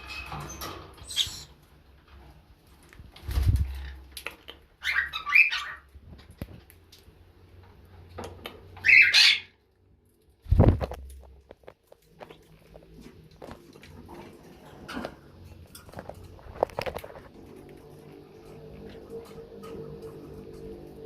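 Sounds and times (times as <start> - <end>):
harsh squawk-like calls: 1.1 - 1.5, 4.8 - 5.9, 8.8 - 9.6.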